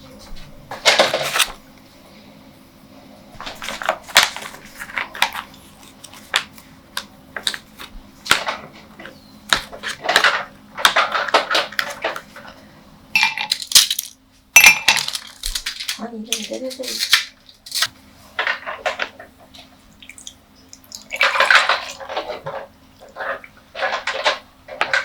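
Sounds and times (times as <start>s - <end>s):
kitchenware clinking and knocking: 13.2s - 17.2s
dishes scraping: 21.2s - 25.0s.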